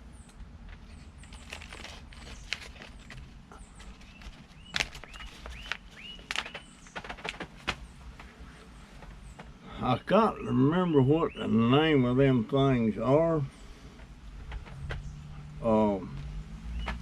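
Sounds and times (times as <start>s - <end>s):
small bird chirping: 2.3s - 7.0s, 16.3s - 17.0s.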